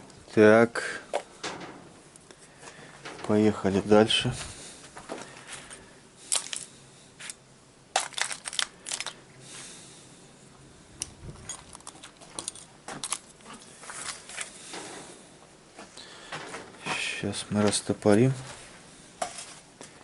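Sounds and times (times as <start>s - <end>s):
small metal parts clicking: 6.3s - 7.4s, 8.0s - 9.2s, 11.0s - 13.4s.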